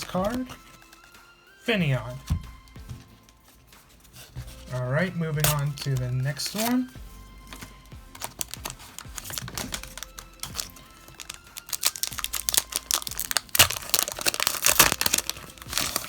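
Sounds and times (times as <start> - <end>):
foil wrapper crinkling and tearing: 5.4 - 16.0.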